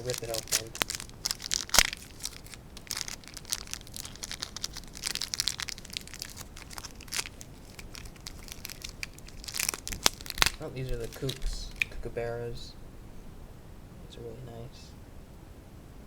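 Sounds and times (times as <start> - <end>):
packaging ripping and crinkling: 0.0 - 12.0.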